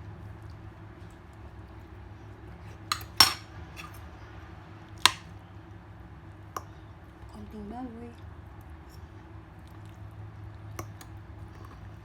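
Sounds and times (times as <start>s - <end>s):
utensils clinking on dishes: 2.7s - 4.0s, 5.0s - 5.3s.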